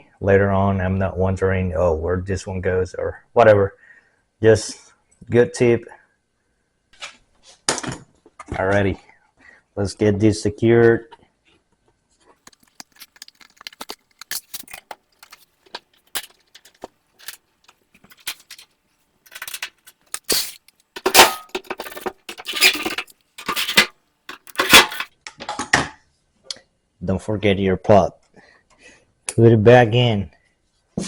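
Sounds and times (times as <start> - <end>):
metal parts clinking and rattling: 12.5 - 18.6, 19.3 - 25.1.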